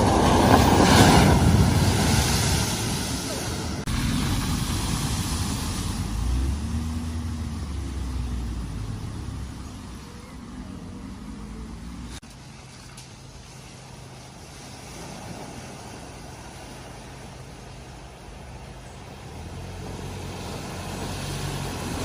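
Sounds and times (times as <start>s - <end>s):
low engine hum: 0.0s - 22.0s
car engine pulling away: 3.8s - 12.2s, 18.9s - 22.0s.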